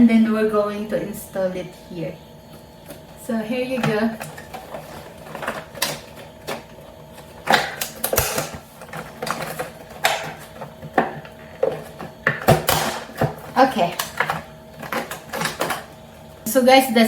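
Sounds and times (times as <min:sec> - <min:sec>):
parts clicking and knocking: 0:03.7 - 0:16.0
packaging rustling: 0:03.8 - 0:16.1.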